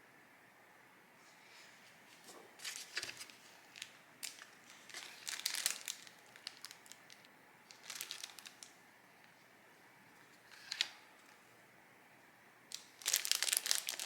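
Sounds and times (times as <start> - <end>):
packaging crinkling: 2.6 - 8.8, 12.7 - 14.0.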